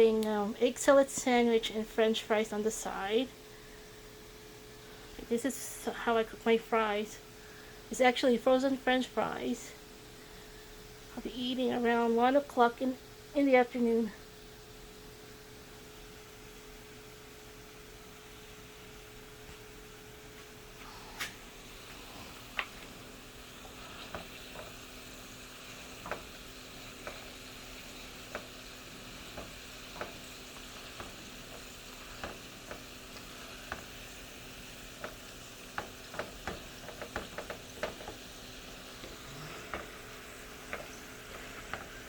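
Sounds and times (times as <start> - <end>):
fries sizzling in hot oil: 21.4 - 42.0
oil popping and clicking: 21.7 - 42.0.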